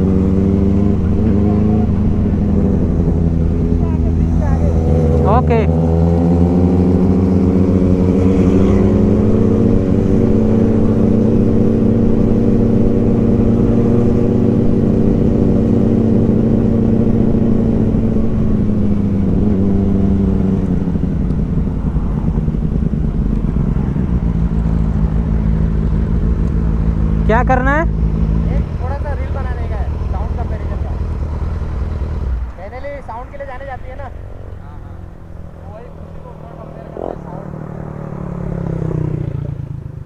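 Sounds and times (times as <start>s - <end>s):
motorcycle engine running: 0.0s - 40.0s.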